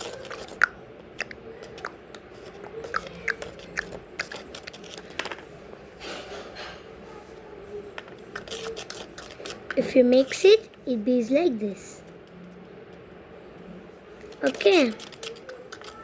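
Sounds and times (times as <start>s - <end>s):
spoon scraping against bowl: 0.0s - 5.1s, 8.3s - 10.4s
spoon stirring thick slime: 0.0s - 10.9s, 12.0s - 16.0s.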